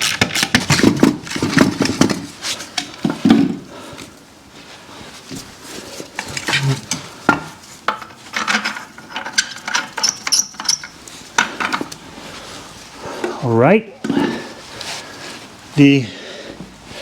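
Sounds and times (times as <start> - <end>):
metal parts clinking and scraping: 6.2 - 7.1, 7.9 - 12.0.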